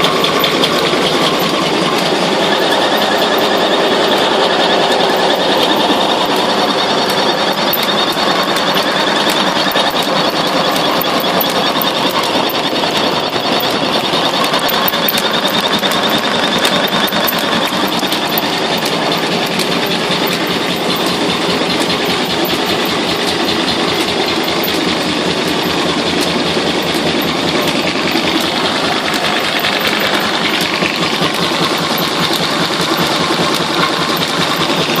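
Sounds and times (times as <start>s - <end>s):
electric motor hum: 0.0s - 35.0s
mechanical clatter: 0.0s - 35.0s.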